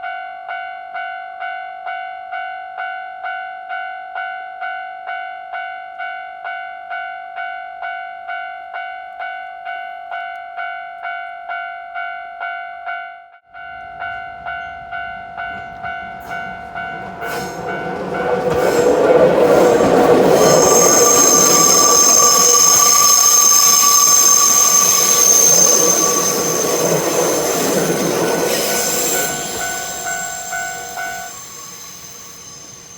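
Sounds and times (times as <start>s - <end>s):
train passing: 13.5s - 32.9s
train wheels squealing: 13.8s - 32.9s.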